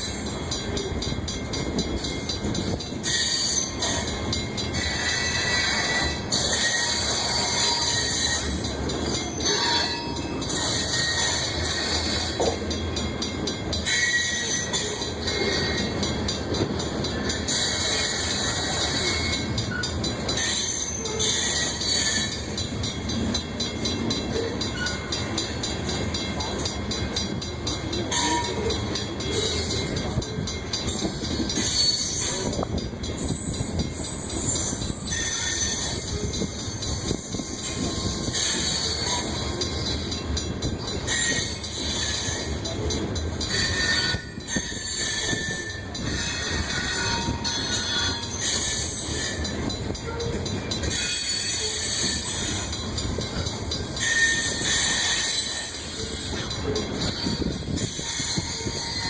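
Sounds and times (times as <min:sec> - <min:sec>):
freight train wheels rumbling: 0:00.0 - 0:59.0
high wheel squeal: 0:02.6 - 0:04.0, 0:04.8 - 0:12.4, 0:13.8 - 0:16.0, 0:17.1 - 0:22.5, 0:30.9 - 0:40.0, 0:40.8 - 0:42.8, 0:43.5 - 0:59.0.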